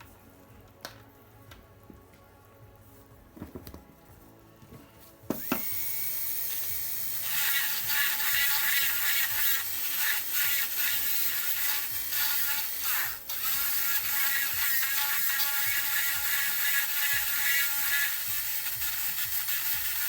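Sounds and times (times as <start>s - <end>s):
background music: 0.0s - 20.0s
dental drill whining: 5.3s - 20.0s.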